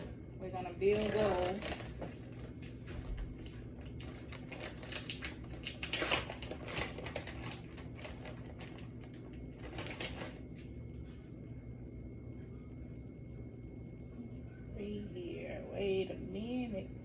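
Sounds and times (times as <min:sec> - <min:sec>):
hands handling ham and bread: 0:01.0 - 0:11.3.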